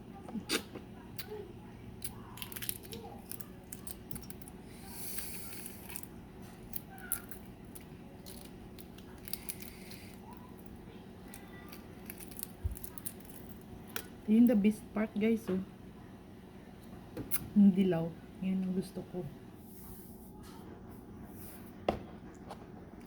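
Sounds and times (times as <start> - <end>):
faint steady hum: 0.0 - 23.0
eggshell clicks and crackles: 2.0 - 14.6.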